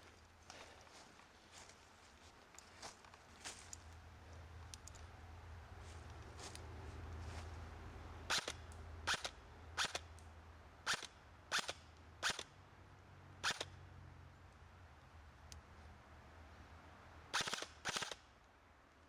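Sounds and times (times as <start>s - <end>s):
airsoft gun firing: 17.4s - 18.2s.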